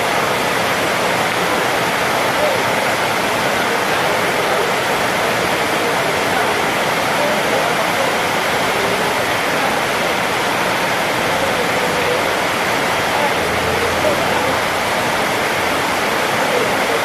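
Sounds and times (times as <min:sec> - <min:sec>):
faint chatter of voices: 0:00.0 - 0:17.0
loud rushing noise: 0:08.9 - 0:17.0.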